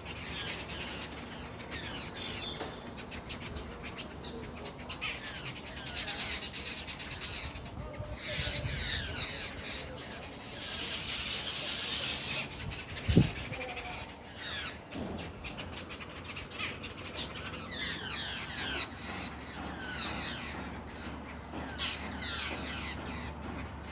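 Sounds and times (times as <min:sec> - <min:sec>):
birds chirping: 0:00.0 - 0:23.9.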